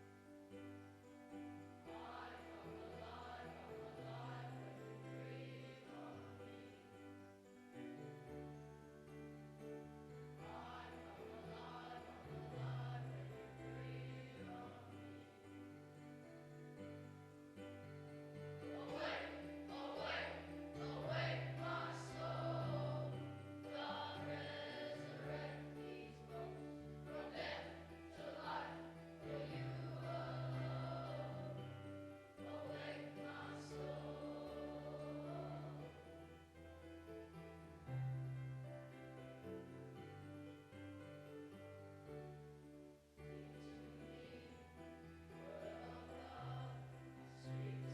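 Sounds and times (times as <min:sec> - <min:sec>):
congregation singing a hymn: 0:01.8 - 0:07.1, 0:10.4 - 0:15.4, 0:18.4 - 0:36.0, 0:43.4 - 0:47.9.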